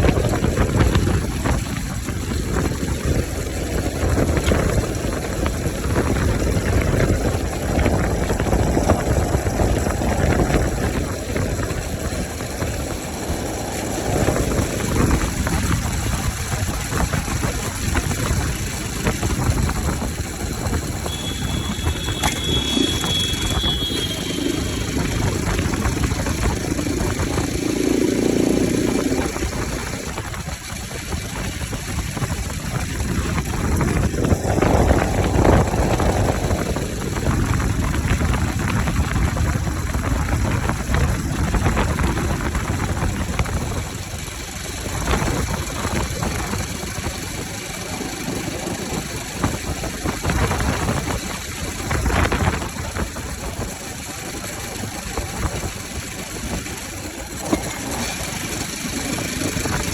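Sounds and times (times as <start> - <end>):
motorcycle engine revving: 0.0 - 30.3, 31.0 - 59.9
high whistle: 21.0 - 25.1.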